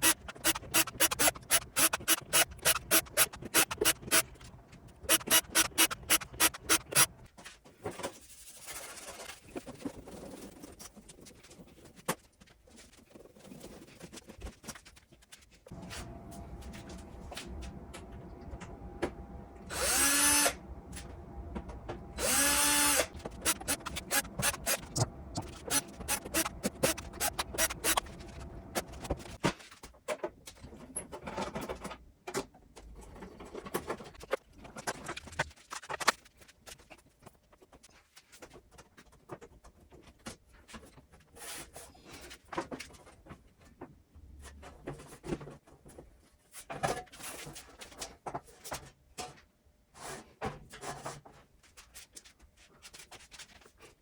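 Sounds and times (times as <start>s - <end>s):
power drill whirring: 0.0s - 7.2s, 15.8s - 29.4s.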